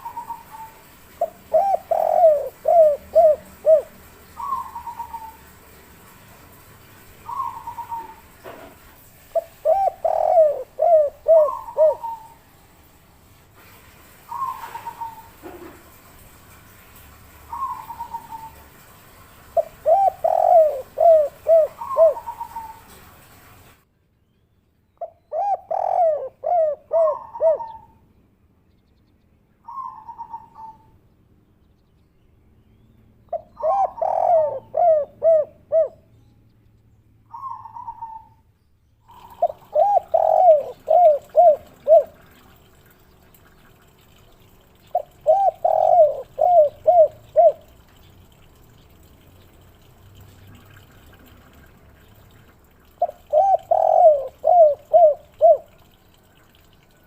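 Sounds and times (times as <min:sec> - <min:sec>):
dove cooing: 0:00.0 - 0:05.5, 0:07.2 - 0:08.6, 0:09.3 - 0:12.5, 0:14.3 - 0:15.8, 0:17.5 - 0:18.7, 0:19.6 - 0:23.0, 0:25.0 - 0:28.0, 0:33.3 - 0:36.1, 0:37.3 - 0:38.4, 0:39.1 - 0:42.8, 0:44.9 - 0:48.0, 0:52.9 - 0:55.9.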